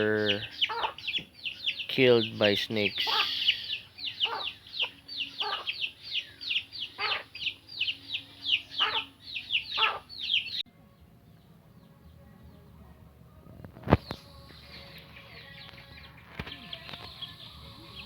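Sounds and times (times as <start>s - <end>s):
chicks peeping: 0.0s - 10.6s.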